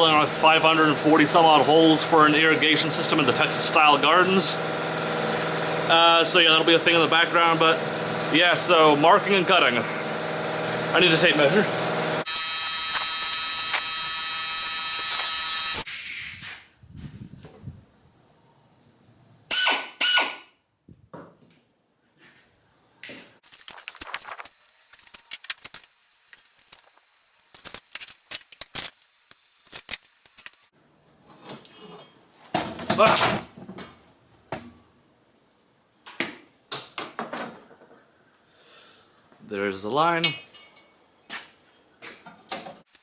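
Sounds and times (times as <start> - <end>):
air compressor running: 0.0 - 16.5.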